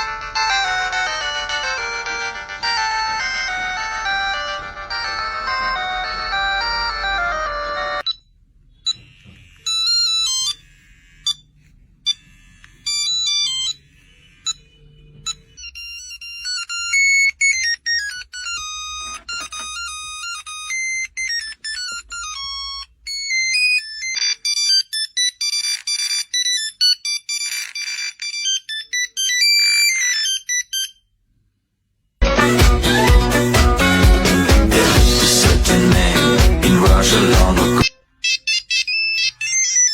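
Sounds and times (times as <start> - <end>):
mobile phone ringtones: 0.0 - 31.1, 36.8 - 39.9.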